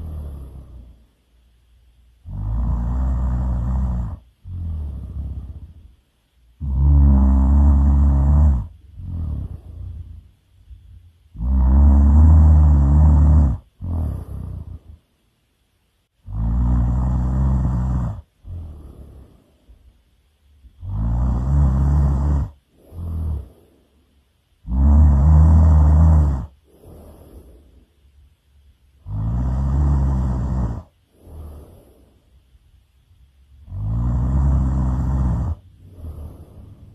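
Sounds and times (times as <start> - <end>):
person snoring loudly: 0.0 - 1.0, 2.2 - 5.9, 6.6 - 15.0, 16.2 - 19.5, 20.7 - 23.8, 24.6 - 27.8, 29.0 - 32.2, 33.5 - 36.9
breathy exhale: 22.4 - 24.3, 26.4 - 28.2, 30.8 - 32.6, 35.5 - 36.9.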